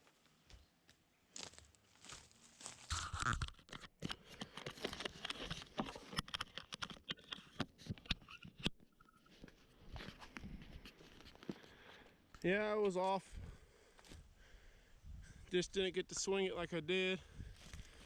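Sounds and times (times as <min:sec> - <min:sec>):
wood cracking and tearing: 0:02.8 - 0:07.6.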